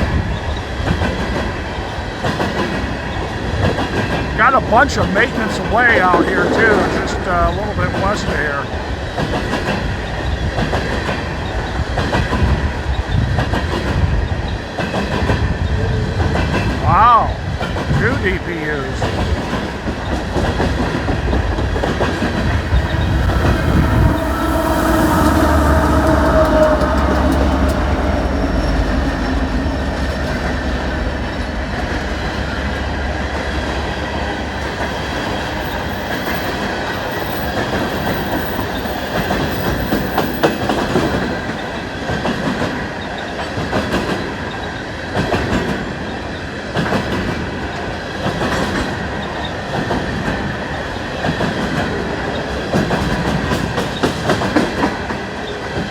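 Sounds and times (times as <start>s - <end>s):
diesel locomotive engine rumble: 0.0s - 42.2s.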